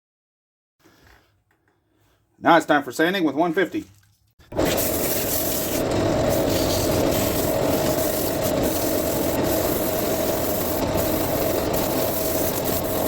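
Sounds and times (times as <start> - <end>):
sandpaper rubbing on wood: 4.6 - 13.0
wood lathe motor hum: 5.0 - 13.0.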